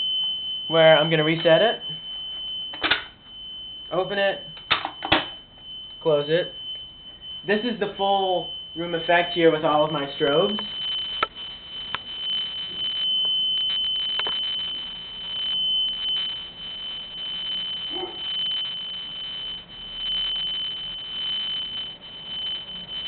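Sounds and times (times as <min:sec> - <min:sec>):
fire alarm tone: 0:00.0 - 0:23.0
clicks: 0:10.6 - 0:14.6.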